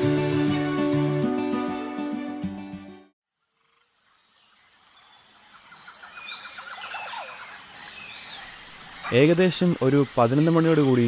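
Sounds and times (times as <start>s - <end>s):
background music: 0.0s - 3.1s
insect drone: 3.3s - 11.0s
bird chirps: 4.2s - 11.0s.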